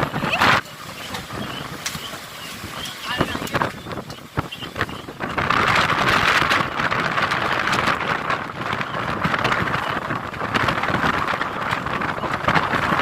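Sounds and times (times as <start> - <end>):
strong storm wind buffeting microphone: 0.0 - 13.0.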